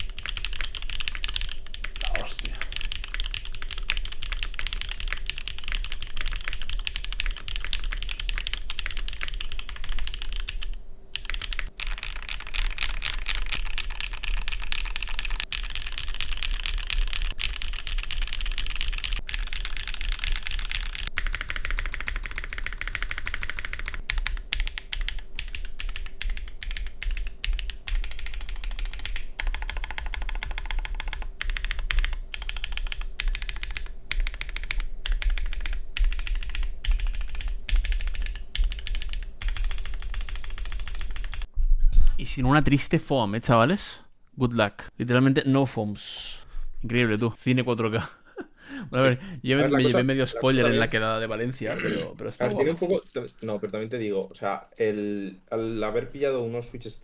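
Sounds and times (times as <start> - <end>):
fast mechanical keyboard typing: 0.0 - 41.5.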